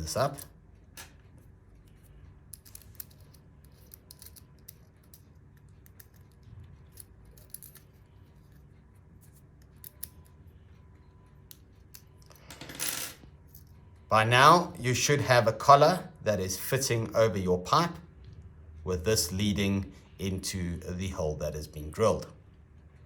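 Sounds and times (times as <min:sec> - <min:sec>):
screwdriver clicking and scraping metal: 0:01.9 - 0:08.6.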